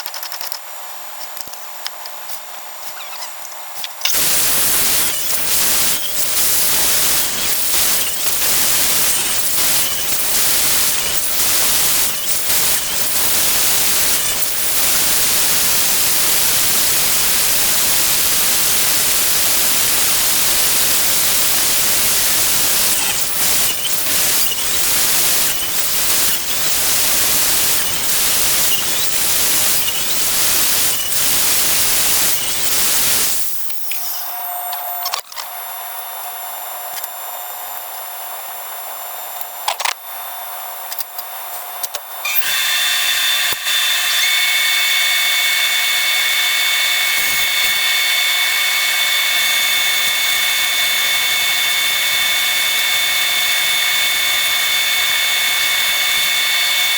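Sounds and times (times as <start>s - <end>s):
sped-up power tool hiss: 4.1s - 35.0s, 42.3s - 56.9s.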